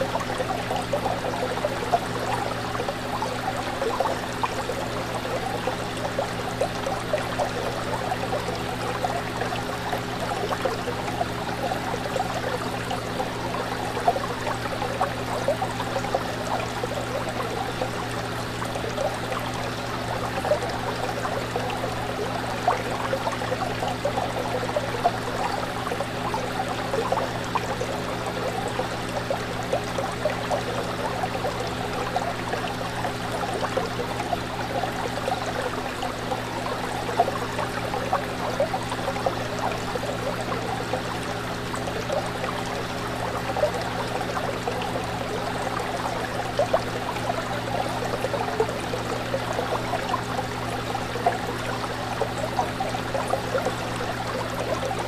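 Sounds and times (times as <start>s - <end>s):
fish tank water bubbling: 0.0s - 55.0s.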